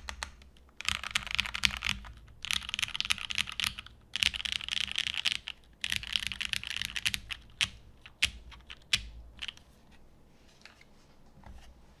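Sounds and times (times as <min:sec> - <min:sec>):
mechanical keyboard typing: 0:00.0 - 0:09.6.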